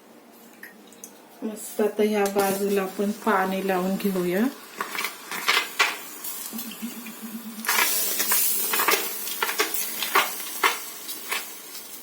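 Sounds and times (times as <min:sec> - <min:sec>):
water sizzling on hot pan: 0:02.4 - 0:12.0.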